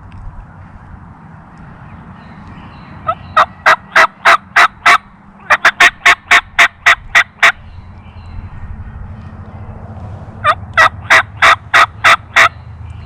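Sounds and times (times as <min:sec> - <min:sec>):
turkey call hen yelps: 0:03.0 - 0:07.6, 0:10.4 - 0:12.6.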